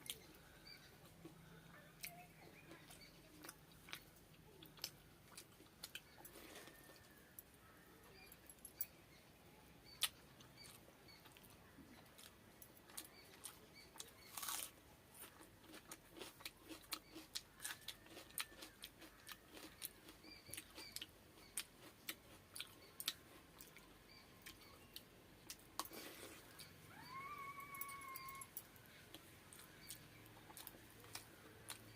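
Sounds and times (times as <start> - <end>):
small crunches of food: 9.9 - 31.9
chewing with wet mouth smacks: 15.2 - 26.7.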